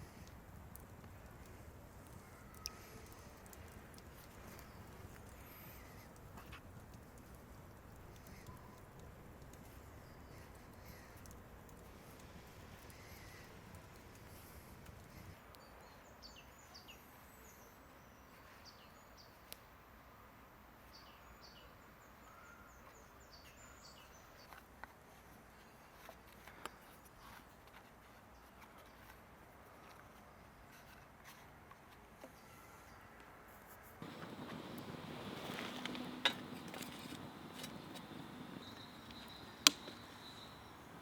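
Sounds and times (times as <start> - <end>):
sharp clicks: 34.0 - 41.0
small bird chirping: 34.0 - 41.0.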